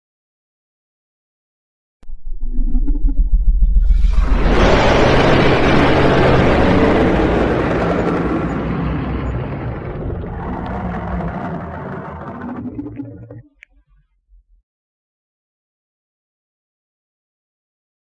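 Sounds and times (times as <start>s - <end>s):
dragon loud rushing noise: 2.6s - 13.4s.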